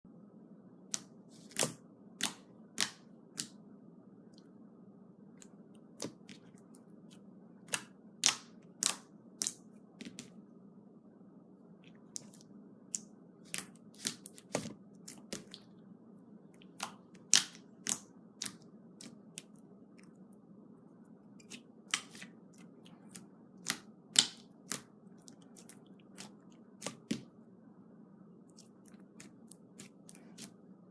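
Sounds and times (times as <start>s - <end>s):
faint steady hum: 0.0s - 30.9s
slime clicking and popping: 16.6s - 19.5s.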